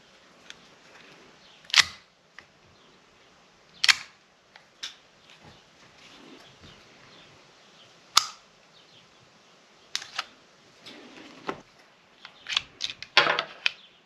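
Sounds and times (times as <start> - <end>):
pistol mechanical clicks: 1.6 - 2.1, 3.8 - 5.0, 8.1 - 8.4.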